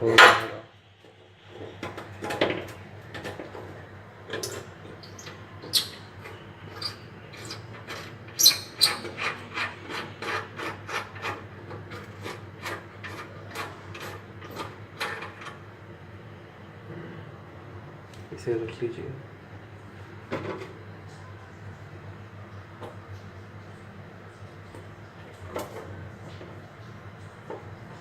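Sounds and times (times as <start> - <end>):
scraping on metal stove underside: 4.3 - 15.6.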